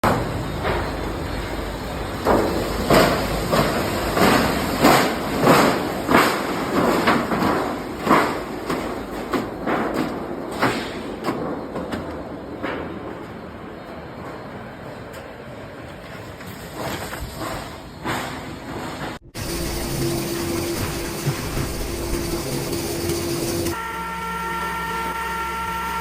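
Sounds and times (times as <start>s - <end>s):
loud clanks and thuds: 16.9s - 23.8s
milling machine noise: 19.2s - 23.8s.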